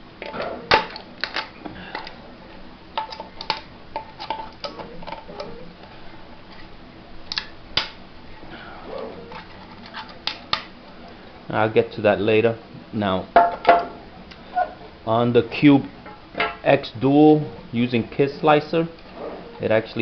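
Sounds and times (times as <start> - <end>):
plastic snapping and clicking: 7.3 - 8.0, 9.3 - 10.7.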